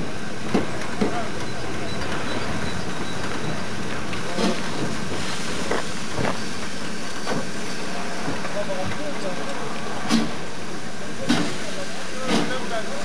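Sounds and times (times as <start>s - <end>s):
train hiss: 3.7s - 13.0s.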